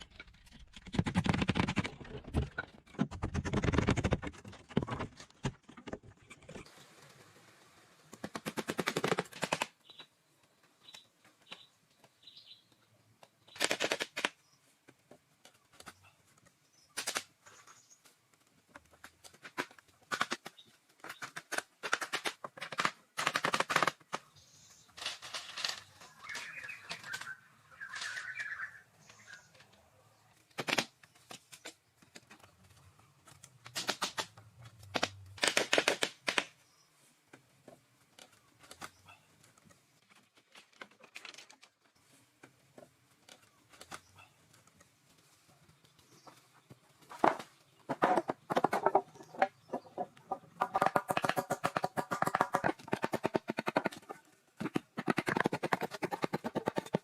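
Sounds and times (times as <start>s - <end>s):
building materials scraping and knocking: 0.0s - 7.2s, 46.1s - 57.0s.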